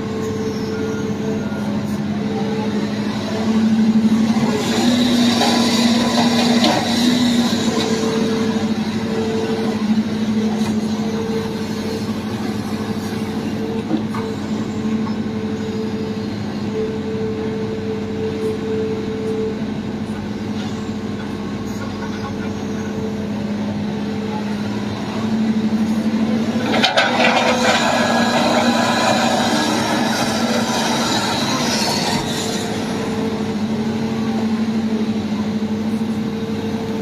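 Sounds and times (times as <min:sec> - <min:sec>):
heavy diesel engines droning: 0:00.0 - 0:37.0
scraping and clattering: 0:26.6 - 0:32.5.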